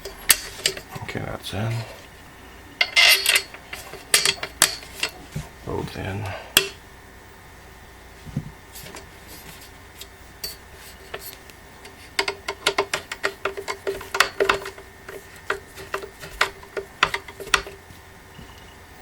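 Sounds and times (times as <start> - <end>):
metallic clicks and knocks on wood: 12.2 - 17.8.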